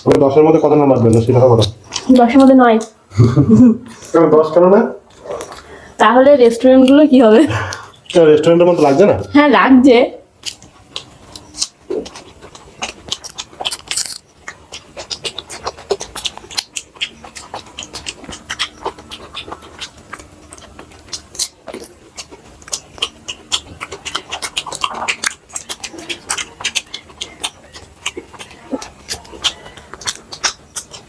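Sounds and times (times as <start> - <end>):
wet chewing: 0.0 - 3.0, 5.0 - 31.0
lip smacks: 10.4 - 31.0.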